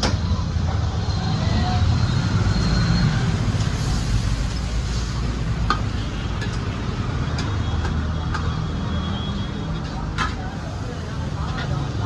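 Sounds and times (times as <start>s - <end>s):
street traffic rumble: 0.0s - 12.0s.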